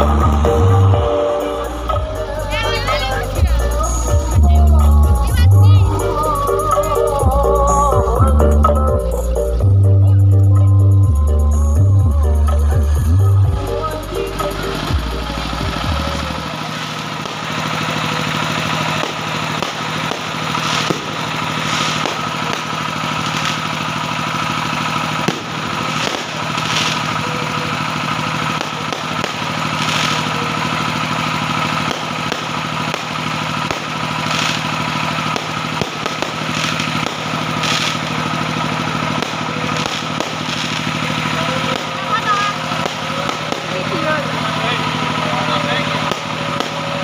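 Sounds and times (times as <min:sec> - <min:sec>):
engines idling: 0:00.0 - 0:47.0
sharp crackles and hissy bursts: 0:16.2 - 0:47.0.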